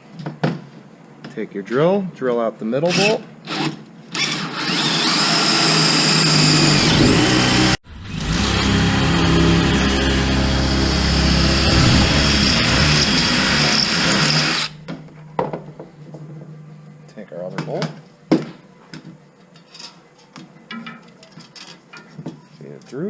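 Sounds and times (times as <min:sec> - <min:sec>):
electric drill running: 0:03.0 - 0:14.8.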